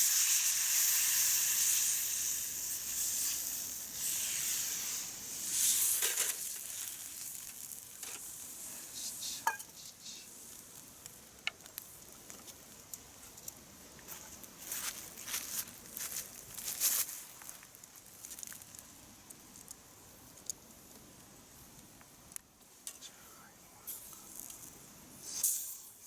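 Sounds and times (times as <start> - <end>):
food sizzling in a frying pan: 0.0 - 11.0.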